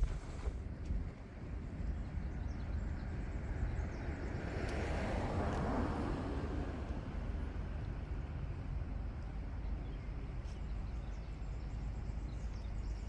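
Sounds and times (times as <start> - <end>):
steady low rumble: 0.0 - 0.6.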